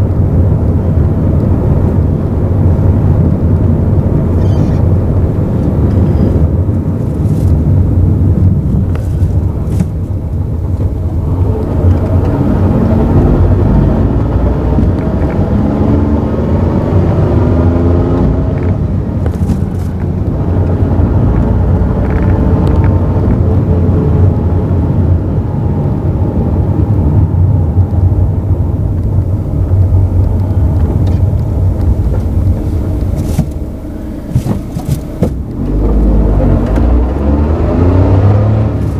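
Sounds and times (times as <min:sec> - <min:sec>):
transmission whine: 0:00.0 - 0:17.6, 0:27.3 - 0:38.8
car engine rumble: 0:00.0 - 0:38.9.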